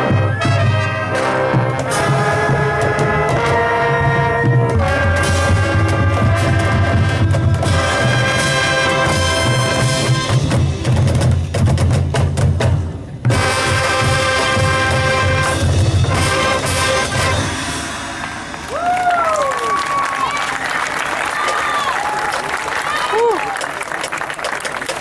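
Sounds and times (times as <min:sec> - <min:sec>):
brass sustained chords: 0:00.0 - 0:10.8, 0:13.3 - 0:18.6
drumline steady beat: 0:00.0 - 0:18.9.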